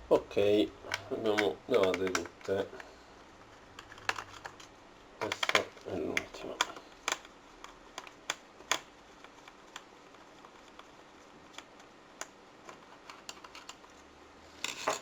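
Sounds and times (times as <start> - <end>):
clicks and taps on plastic case: 0.9 - 2.6.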